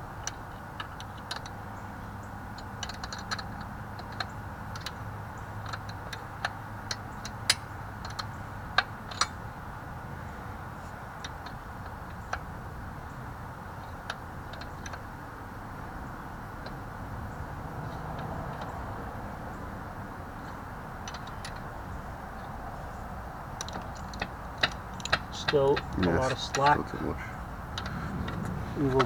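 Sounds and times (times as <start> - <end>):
low steady hum: 0.0 - 29.0
wrench clicking on metal: 2.5 - 5.0, 5.6 - 9.4, 21.0 - 21.7, 23.6 - 26.8.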